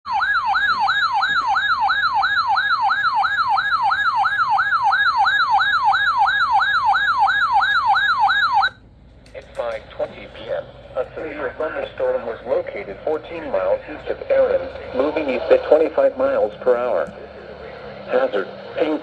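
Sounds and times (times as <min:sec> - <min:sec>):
electronic siren alert tone: 0:00.1 - 0:08.8.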